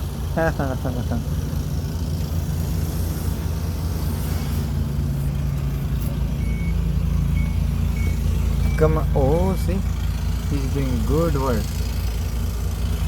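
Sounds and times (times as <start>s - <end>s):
diesel engine idling: 0.0s - 13.0s
faint high beep: 6.4s - 6.8s, 7.4s - 9.0s.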